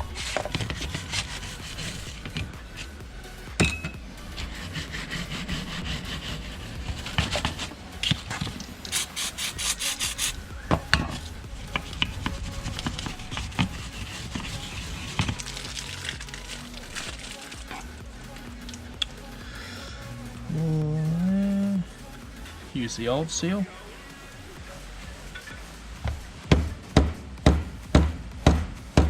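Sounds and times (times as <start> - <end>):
scraper scraping metal surface: 0.0 - 2.5, 4.4 - 7.7, 12.2 - 17.9
sharp knocks: 26.5 - 28.8.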